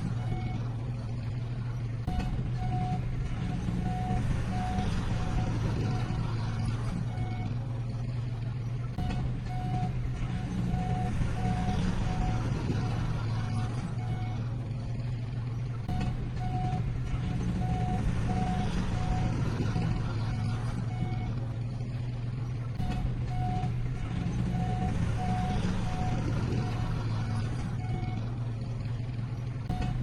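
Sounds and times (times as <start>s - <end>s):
reversing alarm beeping: 0.0s - 0.7s, 2.1s - 7.6s, 9.0s - 14.6s, 15.9s - 21.4s, 22.8s - 28.3s, 29.7s - 30.0s
diesel engine humming: 0.0s - 30.0s.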